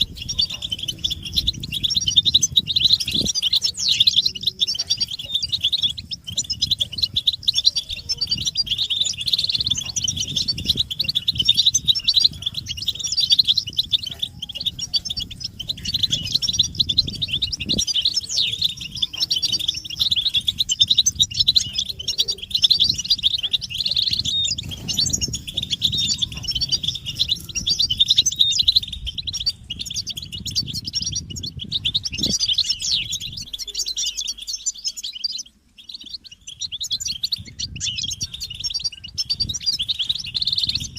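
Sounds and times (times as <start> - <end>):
flock of finches twittering: 0.0 - 40.9.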